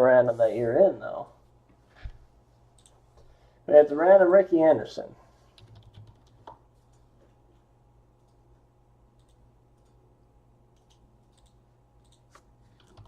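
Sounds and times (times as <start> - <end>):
keyboard typing clicks: 2.8 - 3.0, 5.6 - 7.0, 9.2 - 10.0, 10.7 - 13.0.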